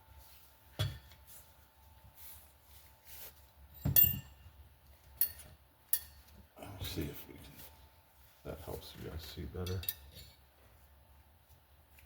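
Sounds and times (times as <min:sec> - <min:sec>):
metal tools clinking: 0:03.8 - 0:04.4, 0:05.1 - 0:06.3, 0:09.6 - 0:10.4.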